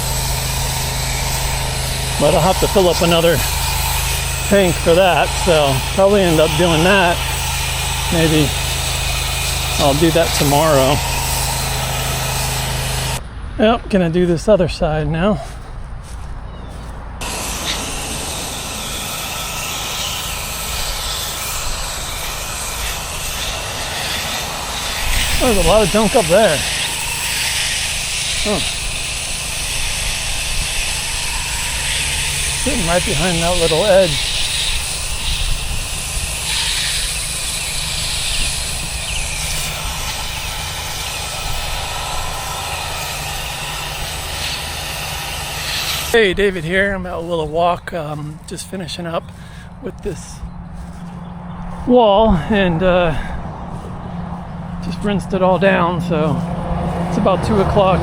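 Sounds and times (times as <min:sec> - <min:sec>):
pressure washer water hiss: 0:00.0 - 0:13.2, 0:17.2 - 0:46.2
engine low drone: 0:00.0 - 0:58.0.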